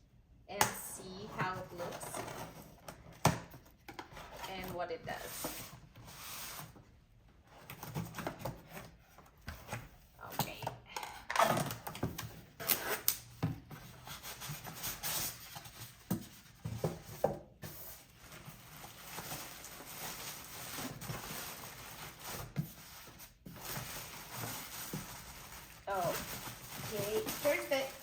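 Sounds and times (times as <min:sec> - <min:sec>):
cardboard rubbing and scraping: 0:13.7 - 0:28.0.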